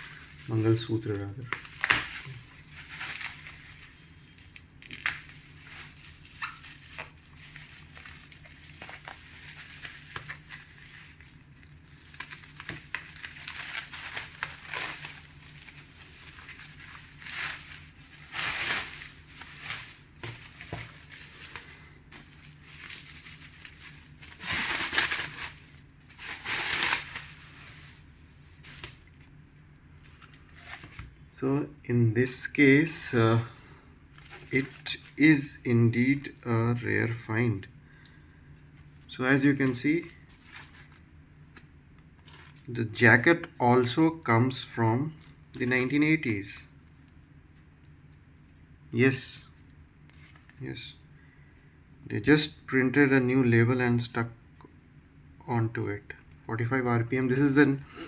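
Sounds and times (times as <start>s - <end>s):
cardboard packaging rustling: 0.0s - 29.3s, 30.0s - 31.2s, 34.1s - 35.2s, 40.0s - 41.0s, 42.2s - 42.6s.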